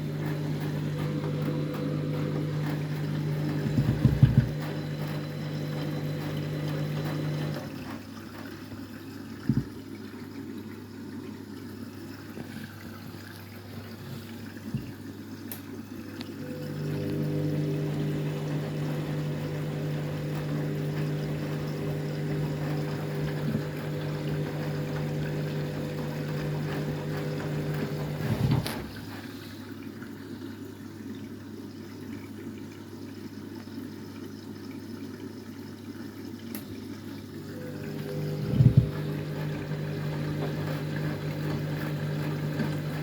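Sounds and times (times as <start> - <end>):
washing machine knock: 0.0 - 8.5, 9.4 - 9.8, 16.8 - 29.1, 37.7 - 43.0
washing machine hum: 0.0 - 43.0
water rushing into washing machine: 0.0 - 43.0.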